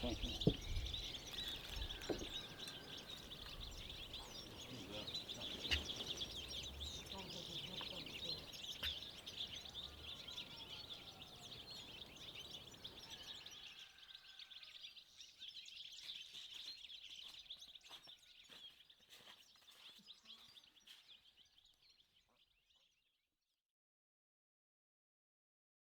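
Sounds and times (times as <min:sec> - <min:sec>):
whistled bird calls: 0:00.0 - 0:07.4, 0:08.1 - 0:14.5
small birds chirping: 0:00.0 - 0:23.3.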